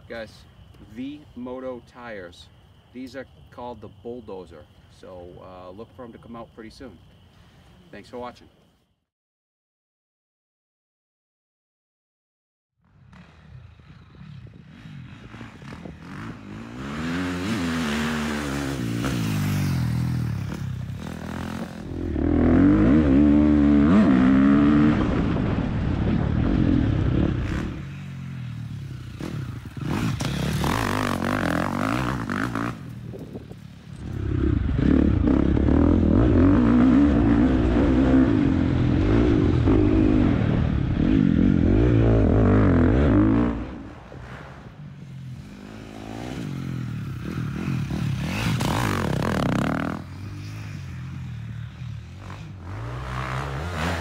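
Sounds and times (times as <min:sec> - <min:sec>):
dirt bike engine revving: 0:12.8 - 0:54.0.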